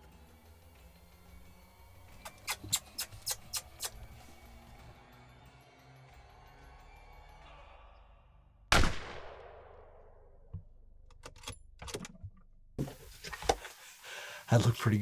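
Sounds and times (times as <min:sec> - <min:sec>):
rifle shot with echo: 0:08.7 - 0:10.2.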